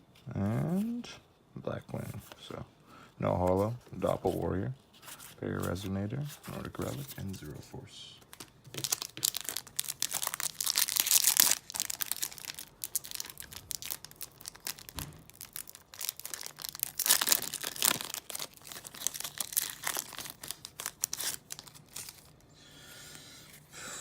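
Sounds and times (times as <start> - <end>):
foil wrapper crinkling and tearing: 8.3 - 22.4.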